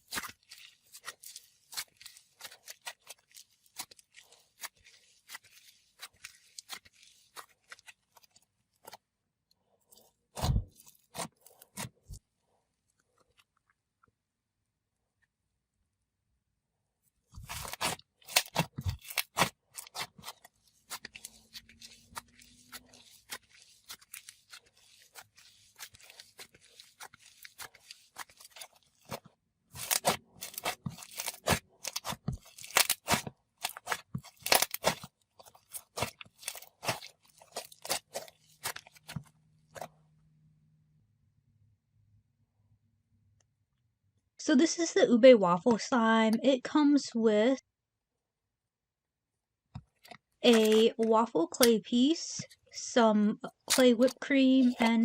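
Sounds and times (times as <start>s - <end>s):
slime crackling and popping: 0.0s - 9.0s, 17.4s - 39.9s, 53.5s - 55.0s.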